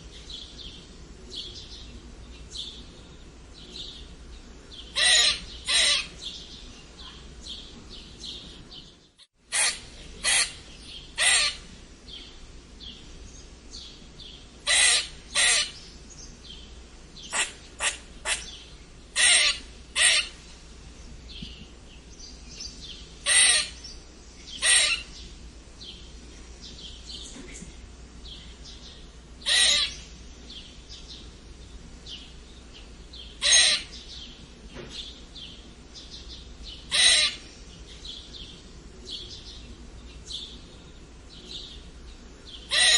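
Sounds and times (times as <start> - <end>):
squirrel squeaking: 5.0 - 6.2, 9.5 - 10.6, 11.2 - 11.6, 14.7 - 15.8, 19.2 - 20.4, 23.2 - 23.8, 29.4 - 30.0, 33.4 - 33.9, 36.9 - 37.4, 42.7 - 42.9.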